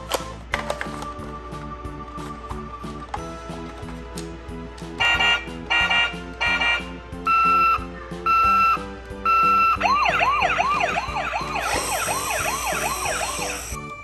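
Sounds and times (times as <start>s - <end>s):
toy siren beeps: 5.1s - 13.8s
fast warbling siren: 9.6s - 13.8s.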